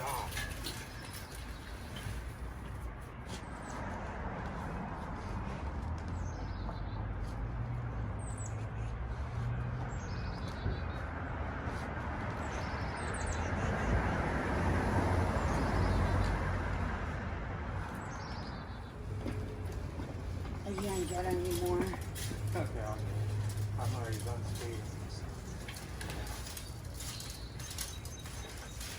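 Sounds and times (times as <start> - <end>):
small birds trilling: 18.0 - 28.9.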